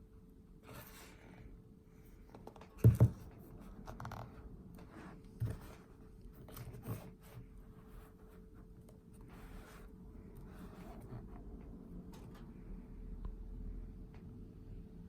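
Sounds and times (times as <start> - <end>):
faint steady hum: 0.0 - 15.0
thumps and knocks: 2.4 - 3.4.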